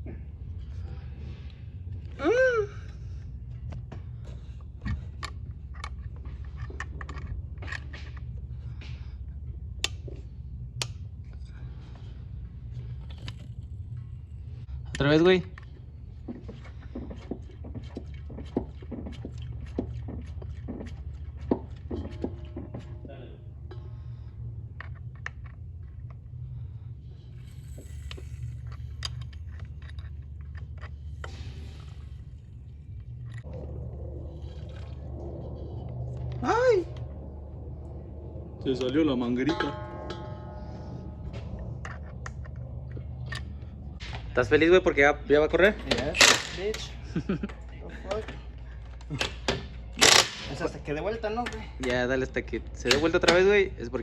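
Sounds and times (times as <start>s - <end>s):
steady low hum: 0.0s - 54.0s
tool clicks and knocks: 52.8s - 53.5s.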